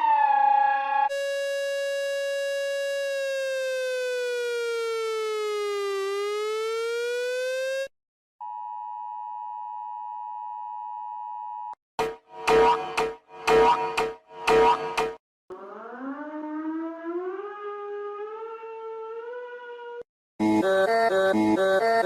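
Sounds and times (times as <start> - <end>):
loud pulsing alarm: 1.0 - 7.9, 12.0 - 20.0.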